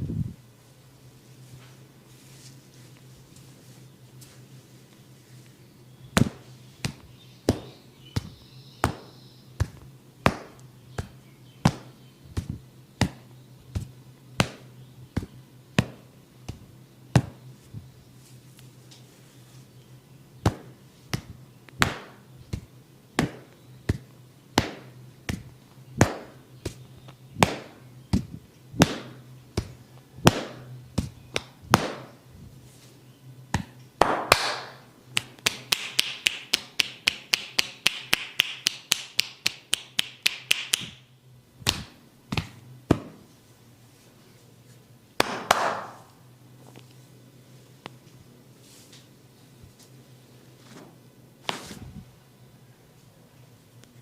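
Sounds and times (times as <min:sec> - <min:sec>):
faint low hum: 0:00.0 - 0:54.0
sharp taps on head and neck: 0:06.2 - 0:17.4, 0:27.4 - 0:32.1, 0:41.6 - 0:43.2.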